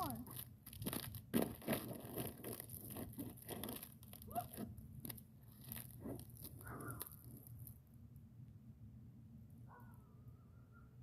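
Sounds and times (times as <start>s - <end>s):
crunching of icy snow underfoot: 0.0s - 7.8s.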